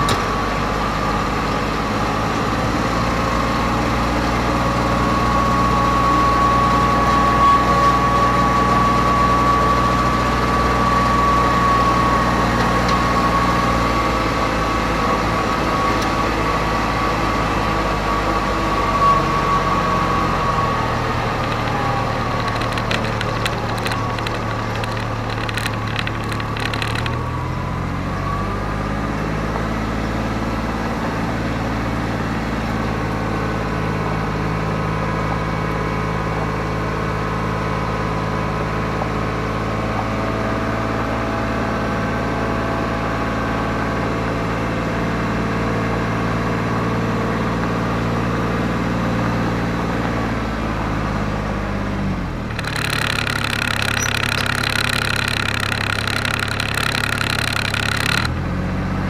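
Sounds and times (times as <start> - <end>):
diesel engine running: 0.0 - 59.0
rattling noise: 20.5 - 27.4, 52.4 - 58.4.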